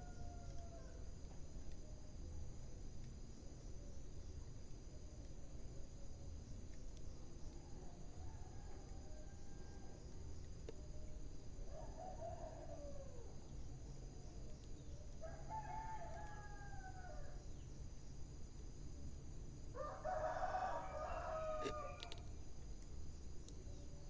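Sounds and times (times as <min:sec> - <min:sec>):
low background hiss: 0:00.0 - 0:24.0
rooster crowing: 0:15.2 - 0:17.3, 0:19.8 - 0:22.2
sharp crackles: 0:20.1 - 0:24.0.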